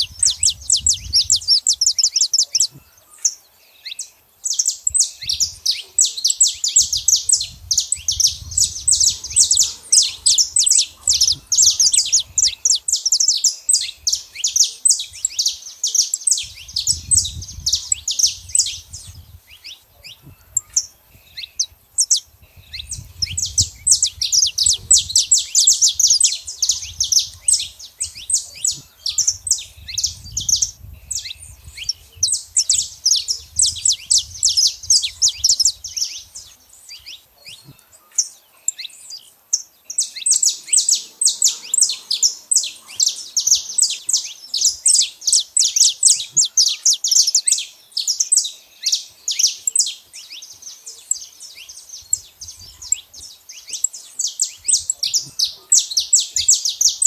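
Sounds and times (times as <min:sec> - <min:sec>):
finch singing high chirps: 0:00.0 - 0:57.0.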